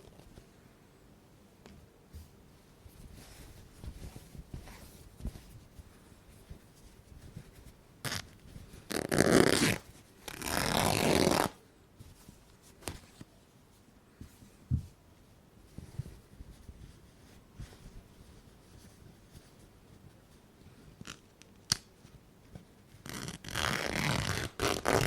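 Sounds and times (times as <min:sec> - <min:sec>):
handling rustles: 0:01.7 - 0:10.5
cloth ripping: 0:08.0 - 0:08.3, 0:08.9 - 0:11.6, 0:23.0 - 0:25.0.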